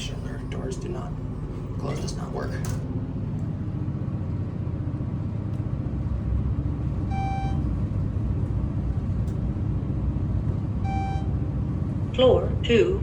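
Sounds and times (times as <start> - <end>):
elevator low rumble: 0.0 - 13.0
short electronic beep: 7.1 - 7.7, 10.8 - 11.4.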